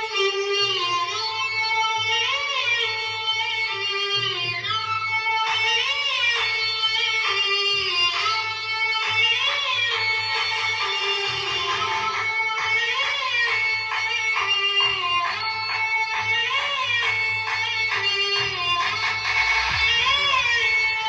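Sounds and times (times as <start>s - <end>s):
repeating bass beat: 9.9s - 21.0s
pitch-bending lead melody: 10.3s - 21.0s.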